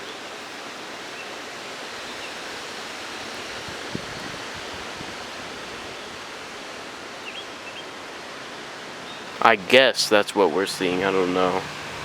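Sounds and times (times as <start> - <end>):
gusty wind rushing: 0.0 - 7.3.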